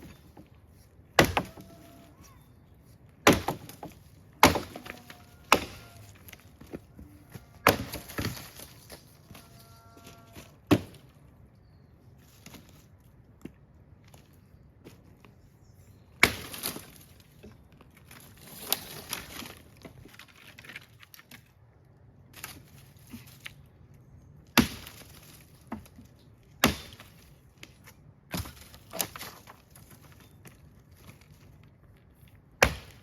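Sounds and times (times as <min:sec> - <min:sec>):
dry wood cracking: 0:03.2 - 0:11.1, 0:16.2 - 0:21.5.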